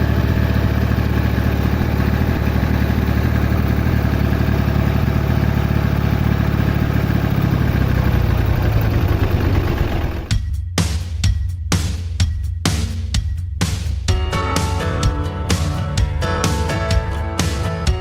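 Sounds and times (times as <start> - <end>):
engine idling: 0.0 - 10.4.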